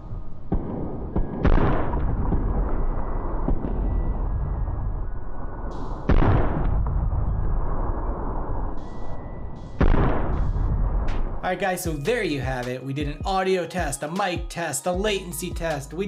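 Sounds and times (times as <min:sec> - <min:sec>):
heavy booms: 0:00.5 - 0:08.0, 0:09.8 - 0:11.4
sharp cracks: 0:05.6 - 0:07.0.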